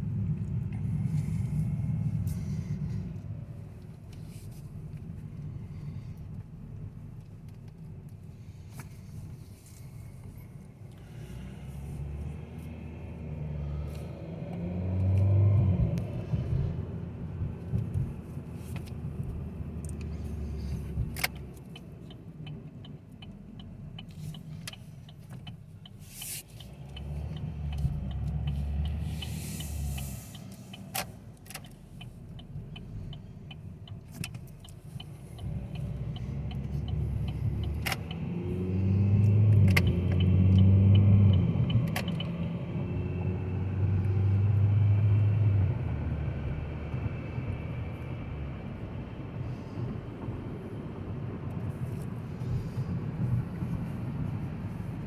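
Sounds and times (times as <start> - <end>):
car engine and road rumble: 0.0 - 55.0
light even ticking: 21.1 - 38.3.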